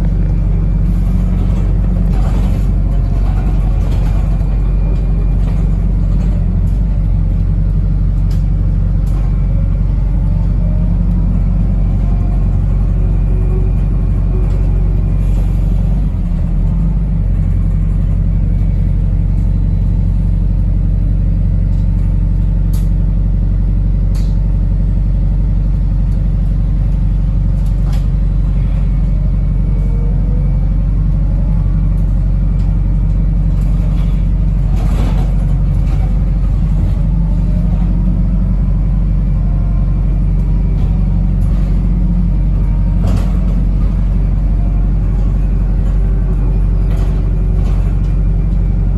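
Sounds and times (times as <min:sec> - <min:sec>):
bus engine drone: 0:00.0 - 0:48.9
knocks and rattles: 0:32.6 - 0:38.0.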